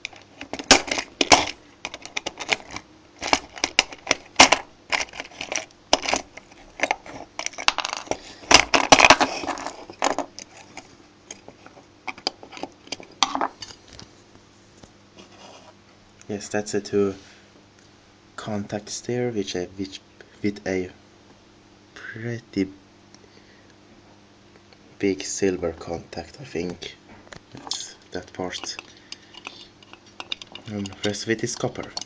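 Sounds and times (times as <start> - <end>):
small parts clicking and clattering: 0.0 - 14.0, 27.6 - 32.0
scraping rattle: 28.4 - 32.0.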